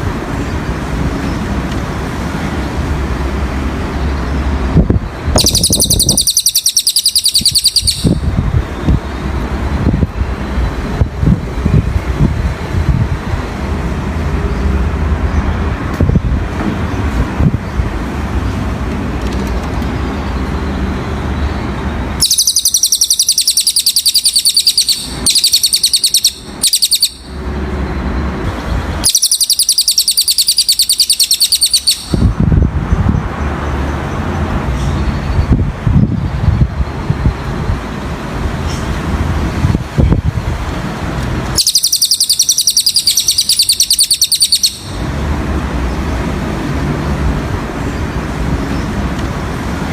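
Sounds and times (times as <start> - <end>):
low traffic-like rumble: 0.0 - 49.9
songbird rapid trill: 5.3 - 8.3, 21.3 - 32.4, 41.5 - 45.1.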